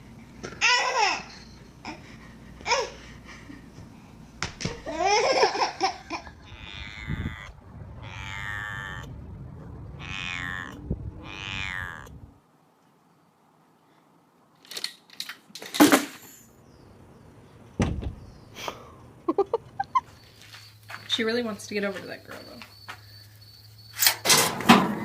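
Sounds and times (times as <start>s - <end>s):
cat meowing: 6.3s - 9.2s, 9.9s - 12.3s
loud thump: 17.8s - 18.2s.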